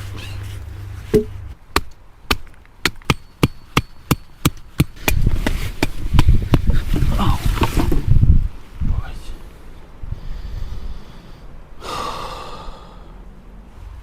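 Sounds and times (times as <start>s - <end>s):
tool striking wood: 1.1s - 6.7s
wind rumble on microphone: 5.0s - 11.2s.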